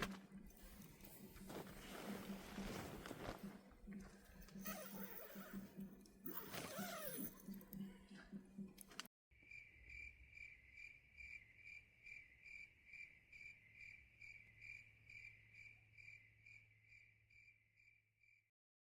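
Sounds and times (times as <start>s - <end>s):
cricket chirping: 9.4s - 18.5s.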